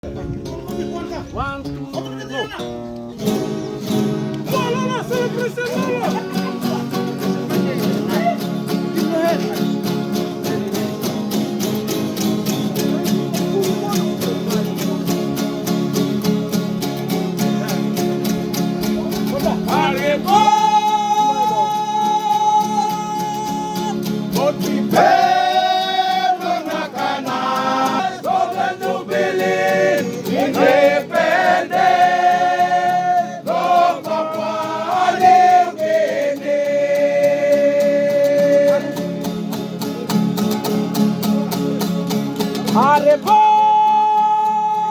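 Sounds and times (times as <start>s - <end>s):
strummed acoustic guitars: 0.0s - 44.9s
voices singing long notes: 19.7s - 39.3s.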